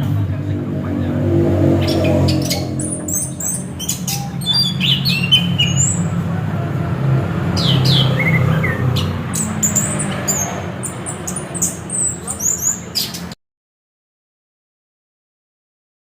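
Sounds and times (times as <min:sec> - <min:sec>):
steady low hum: 0:00.0 - 0:07.6.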